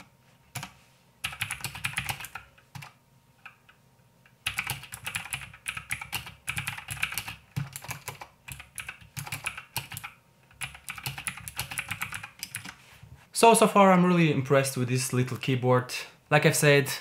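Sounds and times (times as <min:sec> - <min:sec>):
mechanical keyboard typing: 0:00.5 - 0:03.8, 0:04.4 - 0:12.8.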